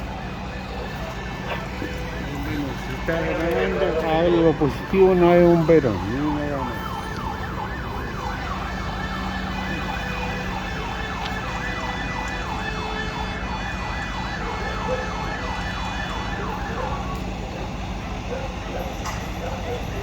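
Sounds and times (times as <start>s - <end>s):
electronic siren yelp: 0.0s - 20.0s
fire engine engine hum: 0.0s - 20.0s.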